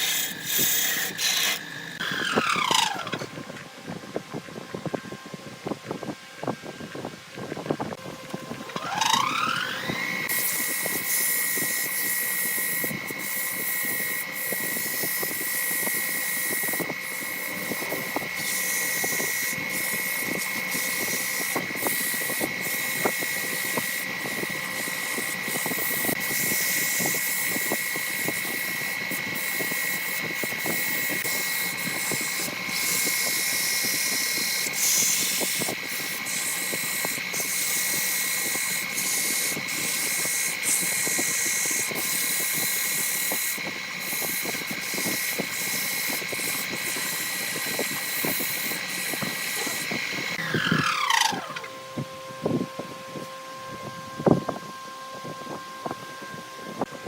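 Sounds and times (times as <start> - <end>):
lathe high-pitched whine: 0.0 - 57.0
tool ticking on spinning wood: 8.7 - 51.7.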